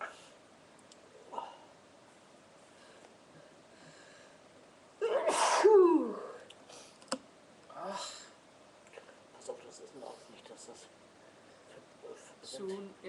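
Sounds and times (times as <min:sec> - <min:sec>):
person sneezing loudly: 0:05.0 - 0:06.3.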